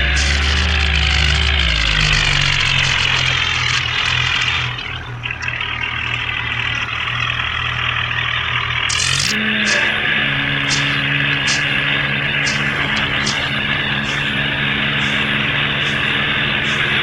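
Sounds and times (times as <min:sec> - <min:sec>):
bulldozer diesel engine revving: 0:00.0 - 0:17.0.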